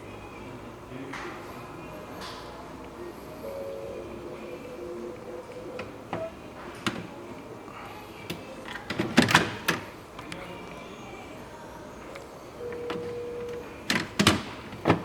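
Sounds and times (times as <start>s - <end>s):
refrigerator doors and drawers clunking: 12.8s - 15.0s.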